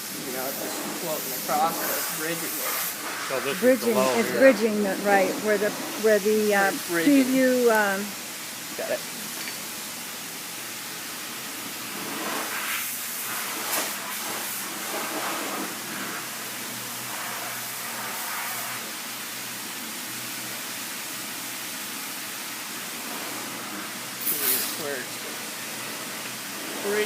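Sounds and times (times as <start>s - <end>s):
sandpaper rubbing on a panel: 0.3s - 3.9s.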